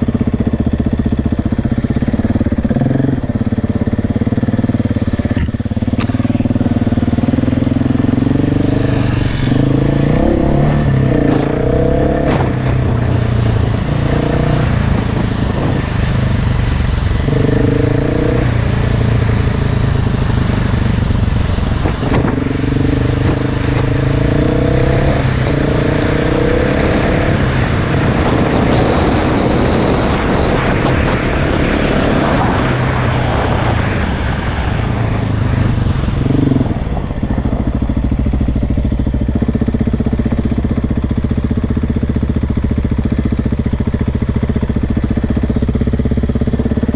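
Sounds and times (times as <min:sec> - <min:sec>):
dirt bike engine revving: 0:00.0 - 0:15.8, 0:17.2 - 0:20.6, 0:21.8 - 0:33.6.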